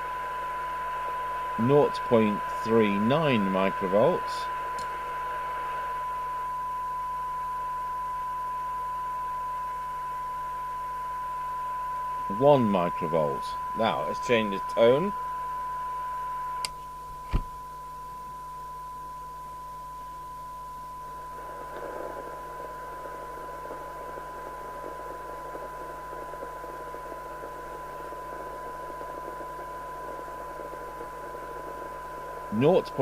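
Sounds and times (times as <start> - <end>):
radio hiss: 0.0 - 6.4, 11.4 - 15.4, 21.0 - 33.0
radio test tone: 0.3 - 18.0, 19.0 - 33.0.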